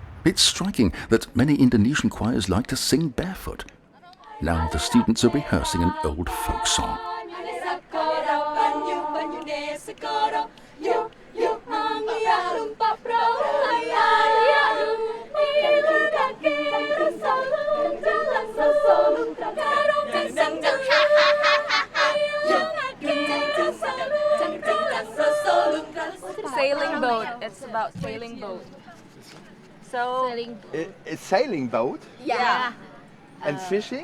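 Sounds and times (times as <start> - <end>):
choir singing a cappella: 4.0 - 28.8.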